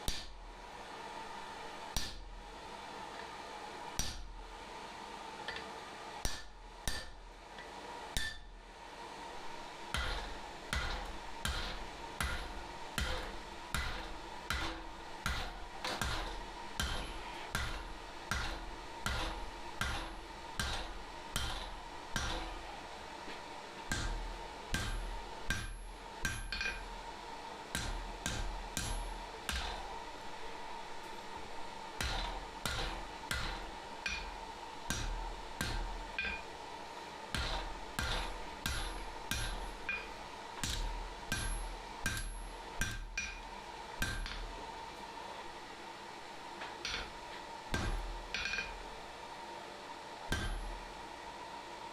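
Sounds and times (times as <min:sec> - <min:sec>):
hammer striking steel on anvil: 0:02.0 - 0:02.2, 0:04.0 - 0:04.3, 0:05.5 - 0:07.2, 0:08.2 - 0:08.5, 0:09.9 - 0:22.6, 0:23.9 - 0:27.0, 0:27.7 - 0:30.0, 0:32.0 - 0:36.6, 0:37.3 - 0:44.6, 0:46.8 - 0:48.8, 0:50.3 - 0:50.9.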